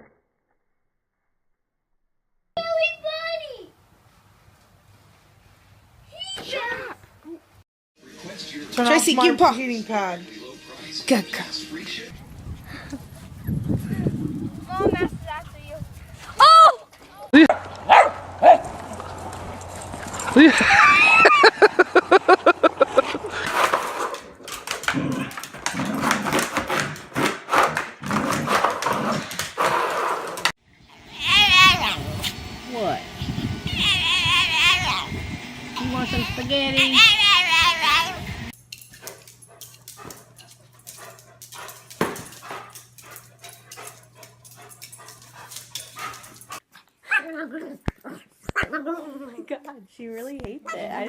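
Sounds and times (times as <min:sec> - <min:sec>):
dog barking: 0:17.5 - 0:18.7
clicks and rustles: 0:23.5 - 0:29.6, 0:38.6 - 0:46.6
dog whining: 0:33.6 - 0:35.2.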